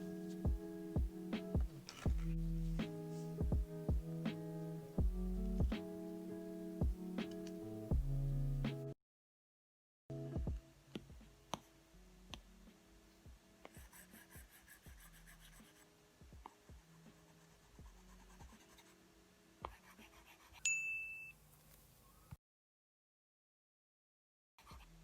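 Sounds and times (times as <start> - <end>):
short high ding: 20.7 - 21.4.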